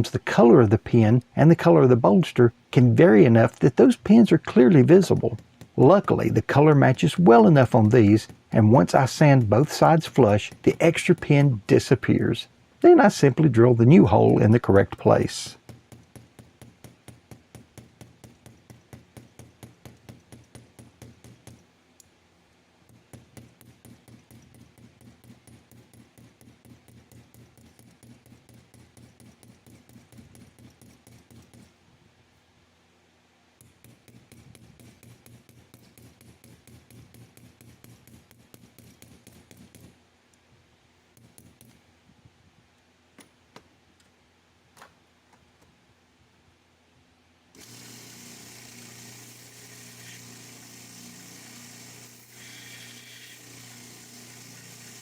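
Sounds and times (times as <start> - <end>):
small hammer striking metal: 15.6 - 21.6.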